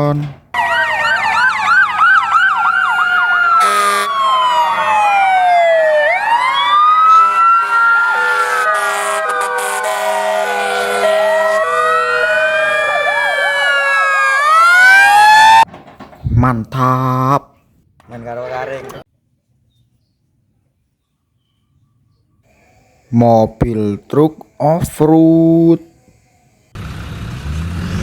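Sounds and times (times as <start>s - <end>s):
toy siren wailing: 0.6s - 15.6s.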